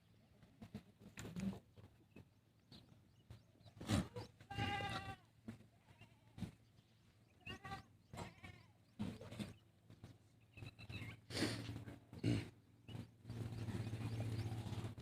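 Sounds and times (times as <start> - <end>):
goat bleating: 3.8 - 6.6, 7.4 - 9.2.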